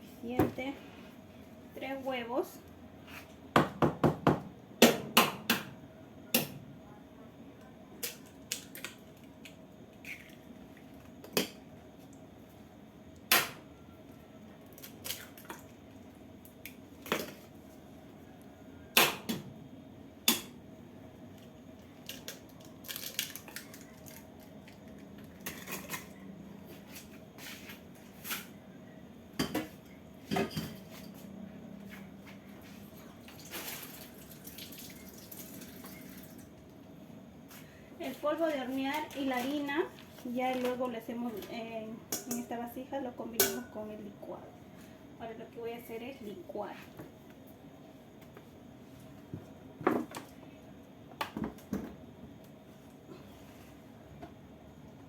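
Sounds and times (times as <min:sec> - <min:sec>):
kitchenware clinking: 0:25.4 - 0:26.2.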